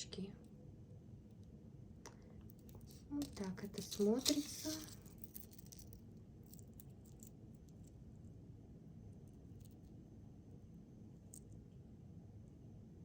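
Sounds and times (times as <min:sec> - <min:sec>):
jewelry chain clinking: 0:02.5 - 0:07.8.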